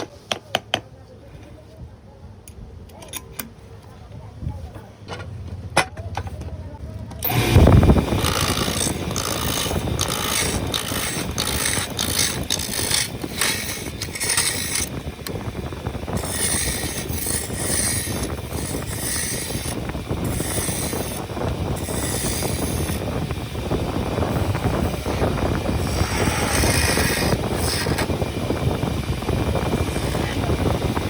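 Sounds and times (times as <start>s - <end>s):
power tool cutting wood: 7.2s - 15.4s, 16.0s - 28.4s, 29.4s - 31.0s.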